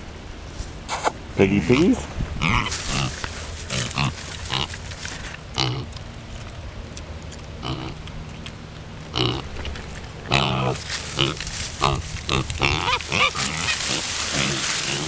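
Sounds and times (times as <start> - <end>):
piglets grunting: 1.7 - 6.0, 7.6 - 15.0.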